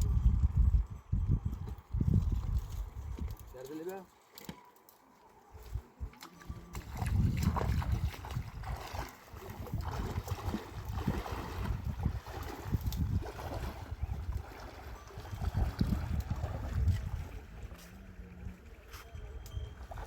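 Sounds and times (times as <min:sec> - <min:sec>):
wind buffeting microphone: 0:00.0 - 0:03.5, 0:05.6 - 0:20.0
rushing river water: 0:06.7 - 0:17.4.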